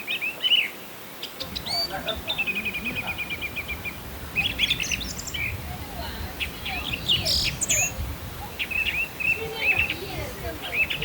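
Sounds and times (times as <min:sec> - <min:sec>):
rapid bird-like chirping: 0:01.4 - 0:11.0.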